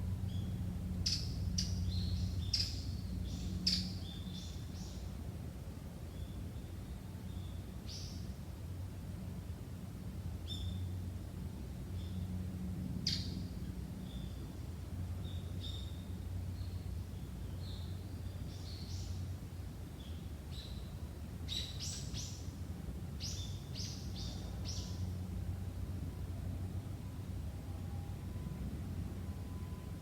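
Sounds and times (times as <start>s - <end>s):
steady low hum: 0.0s - 30.0s
small birds chirping: 0.3s - 5.0s.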